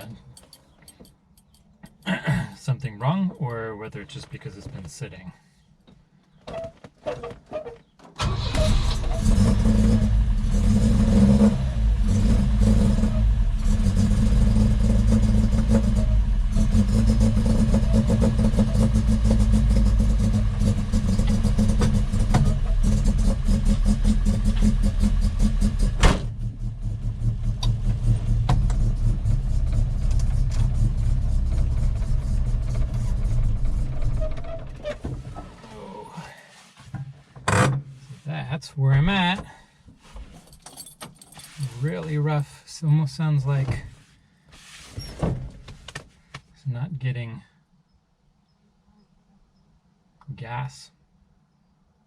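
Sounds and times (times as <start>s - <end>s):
car engine cranking and running rough: 8.2s - 35.7s.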